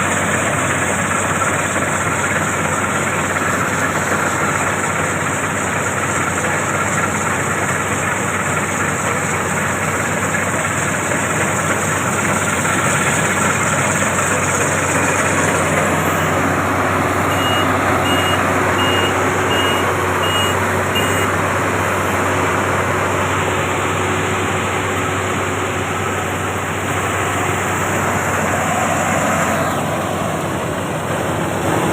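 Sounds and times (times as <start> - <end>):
combine harvester running: 0.0 - 31.9
reversing alarm beeps: 16.0 - 16.4, 17.2 - 21.3.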